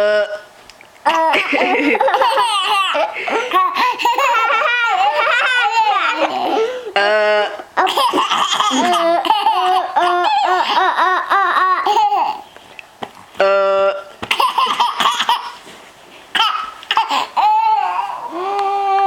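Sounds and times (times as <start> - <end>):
young child laughing: 1.1 - 6.8, 7.8 - 12.5
child held vocal sound: 16.4 - 19.0.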